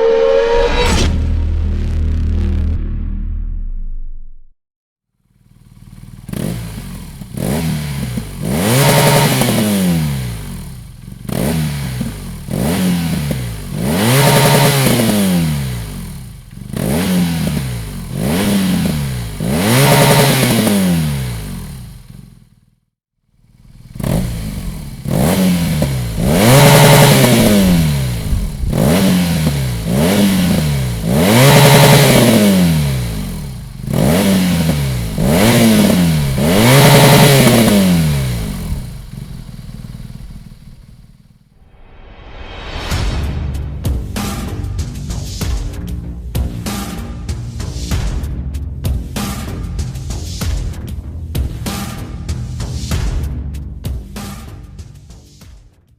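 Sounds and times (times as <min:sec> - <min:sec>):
motorcycle engine revving: 0:00.0 - 0:02.9, 0:05.2 - 0:22.6, 0:23.3 - 0:41.4.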